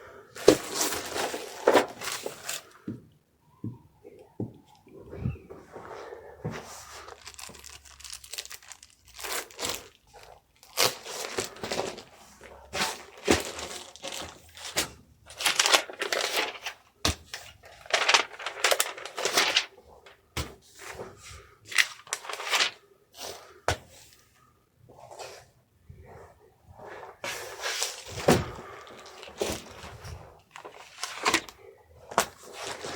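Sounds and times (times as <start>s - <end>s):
packaging crinkling and rustling: 0.4s - 2.8s, 6.6s - 20.3s, 21.7s - 23.3s, 27.2s - 32.9s.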